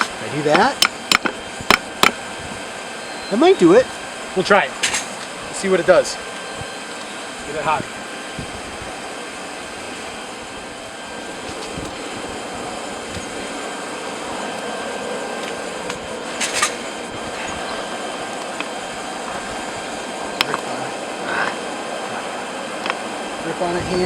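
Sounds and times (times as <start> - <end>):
forge hissing with forced air: 0.0 - 24.0
metallic clatter: 4.8 - 5.6, 15.4 - 17.7.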